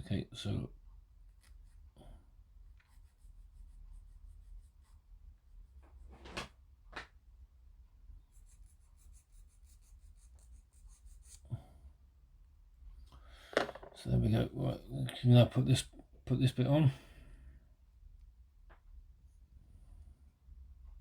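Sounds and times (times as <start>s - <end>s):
plastic parts tapping and clicking: 13.5s - 14.0s.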